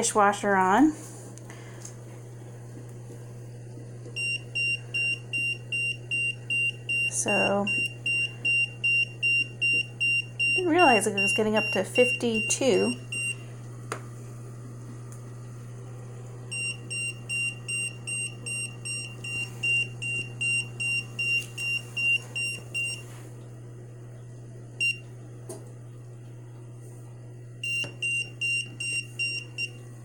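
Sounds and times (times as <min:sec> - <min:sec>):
steady low hum: 0:00.0 - 0:30.0
meter alarm short high beeps: 0:04.2 - 0:13.4, 0:16.5 - 0:23.0, 0:27.6 - 0:29.8.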